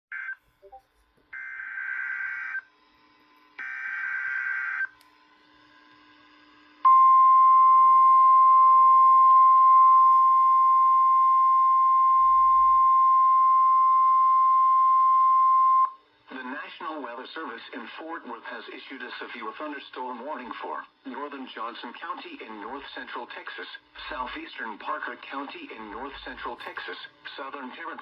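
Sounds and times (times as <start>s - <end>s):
steady warning alarm tone: 1.4s - 2.7s, 3.6s - 4.9s.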